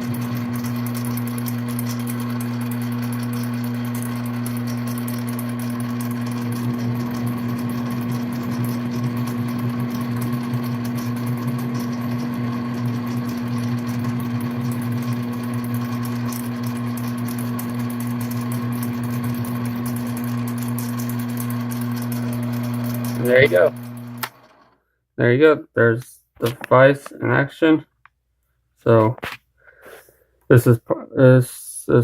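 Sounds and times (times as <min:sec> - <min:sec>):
end mill cutting chatter: 0:00.0 - 0:24.7
lathe motor hum: 0:00.0 - 0:24.8.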